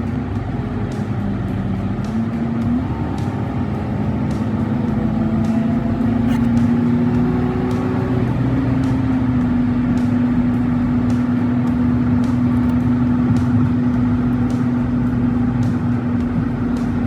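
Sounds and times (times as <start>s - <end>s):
truck driving on highway: 0.0s - 17.0s.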